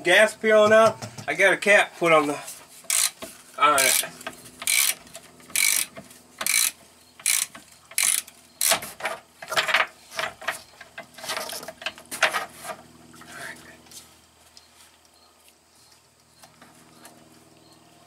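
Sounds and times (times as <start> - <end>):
ratchet wrench clicking: 2.9 - 3.2, 3.8 - 5.0, 5.6 - 8.8.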